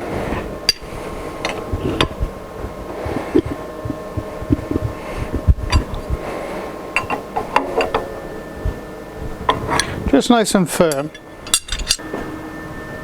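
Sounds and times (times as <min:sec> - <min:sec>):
soft low knocks: 0:01.4 - 0:06.3.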